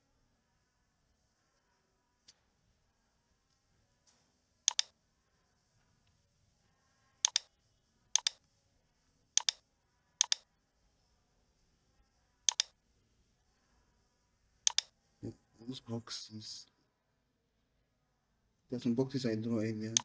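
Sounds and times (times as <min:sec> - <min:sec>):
computer mouse button clicking: 0:04.7 - 0:04.9, 0:07.2 - 0:07.5, 0:08.2 - 0:08.4, 0:09.4 - 0:09.6, 0:10.2 - 0:10.4, 0:12.5 - 0:12.7, 0:14.7 - 0:14.9.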